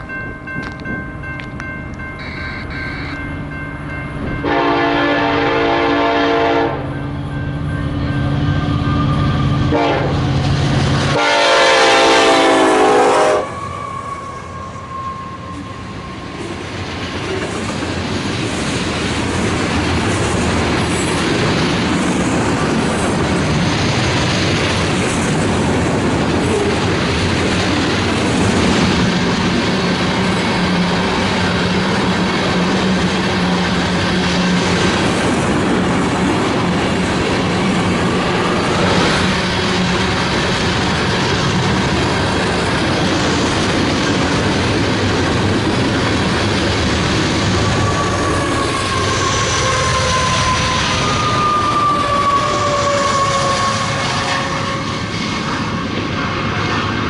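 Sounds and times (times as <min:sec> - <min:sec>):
locomotive air horn blasts: 0:02.2 - 0:03.2, 0:04.4 - 0:07.0, 0:09.0 - 0:10.4, 0:11.1 - 0:15.9, 0:47.8 - 0:55.1.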